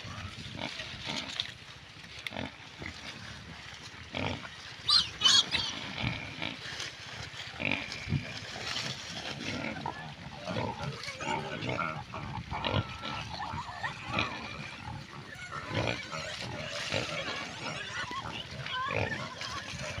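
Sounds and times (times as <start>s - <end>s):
small pigs grunting and squealing: 0.0s - 1.4s, 4.1s - 6.7s, 9.3s - 20.0s.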